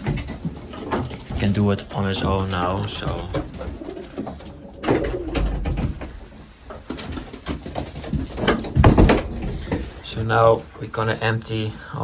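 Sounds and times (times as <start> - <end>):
pigeons cooing: 0.0 - 10.0.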